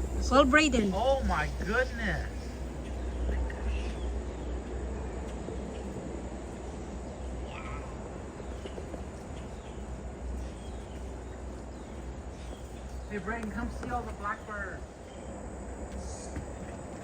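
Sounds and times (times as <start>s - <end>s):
low rumble: 0.0s - 4.5s.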